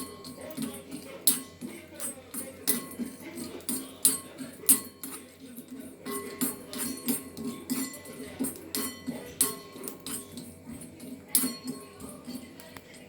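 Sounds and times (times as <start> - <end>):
spoon scraping a pan: 0.0 - 13.0.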